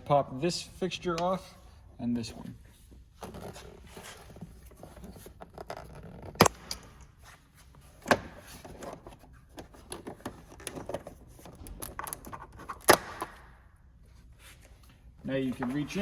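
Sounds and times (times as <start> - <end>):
plastic fasteners snapping off: 9.8 - 13.6.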